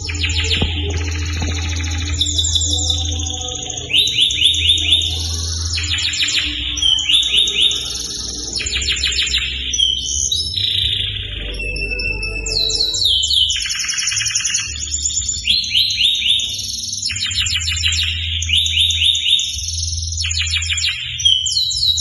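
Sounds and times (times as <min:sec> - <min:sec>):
low steady hum: 0:00.0 - 0:15.3
canary singing trills: 0:00.0 - 0:22.0.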